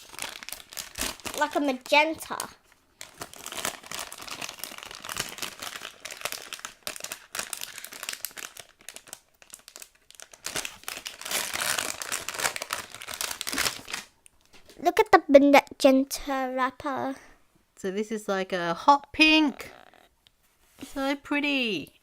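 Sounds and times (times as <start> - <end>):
plastic packaging crinkling and tearing: 0.0 - 14.2.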